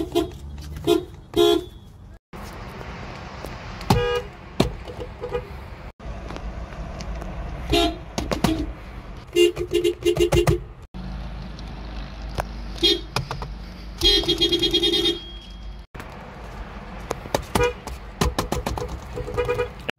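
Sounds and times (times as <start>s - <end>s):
car horns honking: 0.0s - 2.2s, 3.8s - 5.6s, 7.6s - 10.9s, 12.7s - 13.2s, 14.0s - 15.9s, 17.5s - 18.0s, 19.1s - 19.9s
traffic noise: 0.0s - 19.9s.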